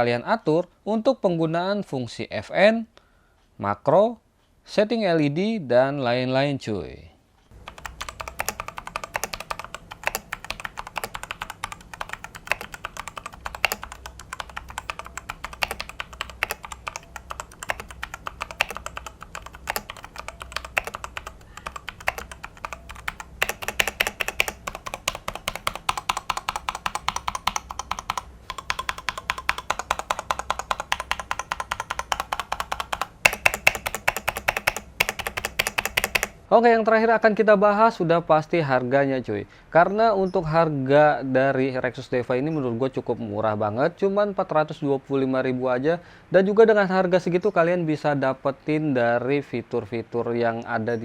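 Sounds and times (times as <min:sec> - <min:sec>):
mechanical keyboard typing: 0:07.5 - 0:36.4.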